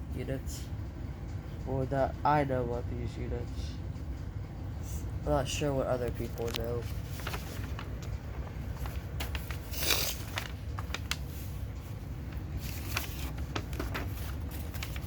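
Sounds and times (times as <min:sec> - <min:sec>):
low background rumble: 0:00.0 - 0:15.0.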